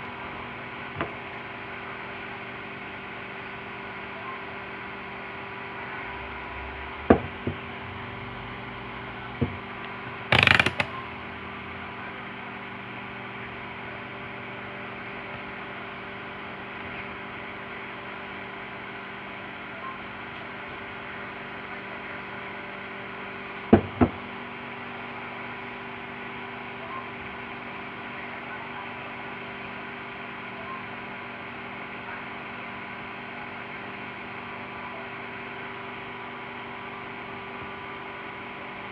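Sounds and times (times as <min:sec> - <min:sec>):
steady electrical hum: 0:00.0 - 0:30.6
sharp clicks: 0:10.3 - 0:10.9.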